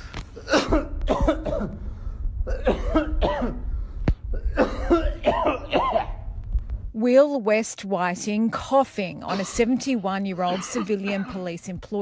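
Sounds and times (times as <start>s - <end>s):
man coughing: 0.4s - 1.8s, 2.5s - 3.6s, 4.3s - 6.2s.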